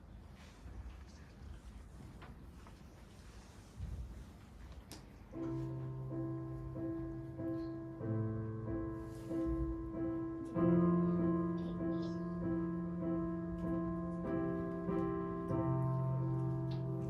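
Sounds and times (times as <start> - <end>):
piano or keyboard music: 5.3 - 17.0.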